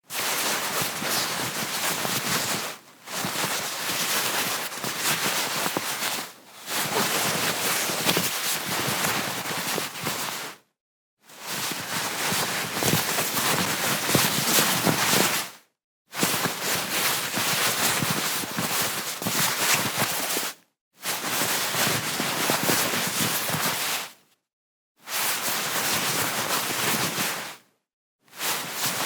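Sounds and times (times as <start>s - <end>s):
fabric rustling: 0.1s - 10.5s, 11.4s - 15.4s.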